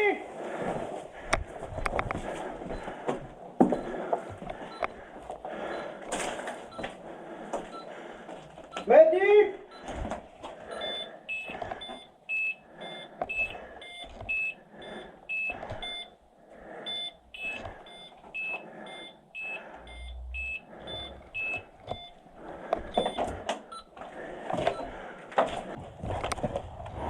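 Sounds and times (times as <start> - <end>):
electronic two-tone beeping: 10.7 - 16.1, 16.9 - 22.2, 22.9 - 23.9.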